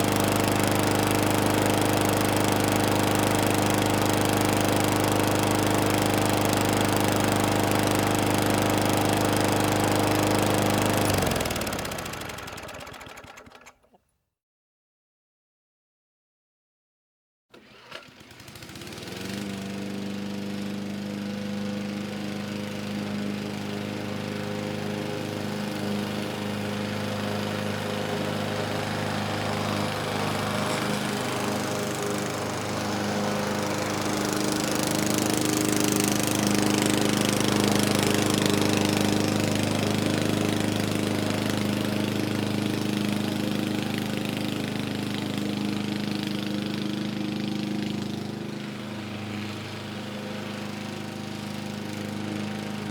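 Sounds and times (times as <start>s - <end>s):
lawn mower engine running: 0.0s - 14.0s, 17.5s - 52.9s.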